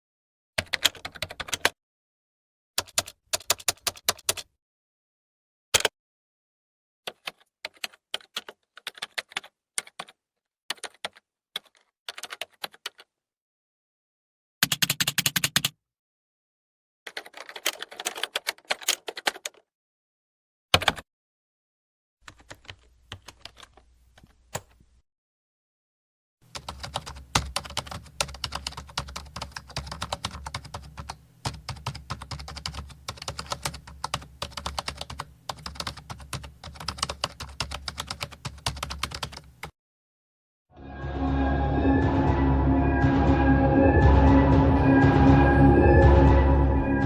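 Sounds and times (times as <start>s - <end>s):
typing on laptop keyboard: 0.6s - 1.8s, 2.8s - 4.5s, 7.1s - 13.1s, 14.6s - 15.8s, 17.1s - 19.7s, 20.8s - 21.1s, 22.2s - 24.8s, 26.5s - 39.8s.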